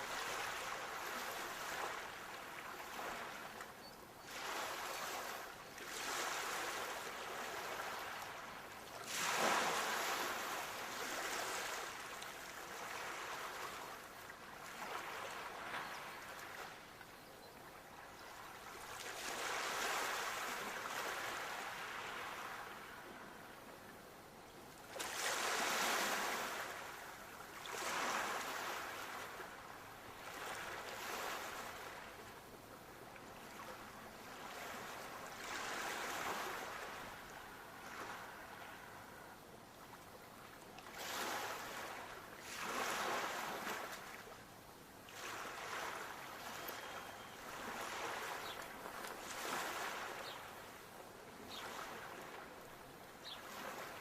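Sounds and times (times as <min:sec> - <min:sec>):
sea waves breaking: 0:04.3 - 0:14.0, 0:18.9 - 0:23.0, 0:24.9 - 0:29.6, 0:33.5 - 0:39.0, 0:40.9 - 0:44.3, 0:45.1 - 0:50.4.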